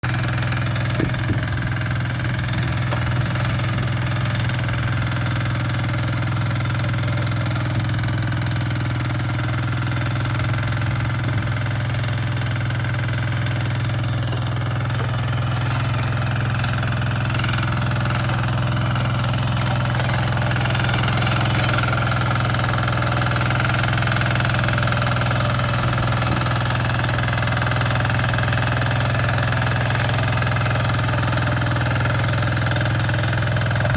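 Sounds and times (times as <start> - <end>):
tiller engine running: 0.0 - 33.9.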